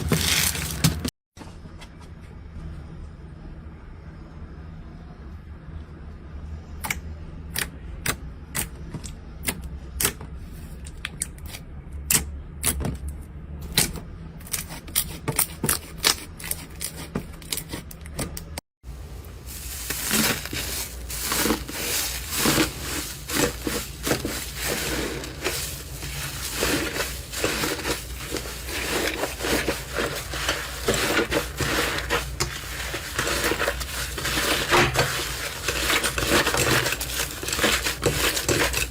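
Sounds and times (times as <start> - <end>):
slime crackling and crunching: 0.0 - 1.1, 19.4 - 38.9.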